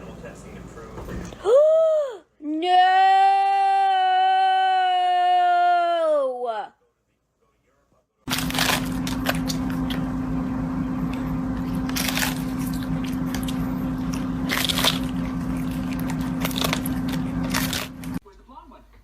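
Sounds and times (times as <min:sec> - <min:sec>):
crunching and chewing: 0:08.3 - 0:10.2, 0:11.0 - 0:18.2
steady low hum: 0:08.3 - 0:18.2.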